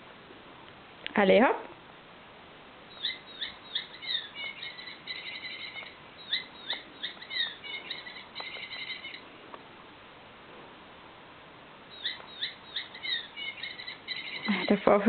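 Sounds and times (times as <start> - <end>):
squeaking toy chirps and trills: 2.9 - 9.2, 11.9 - 14.9.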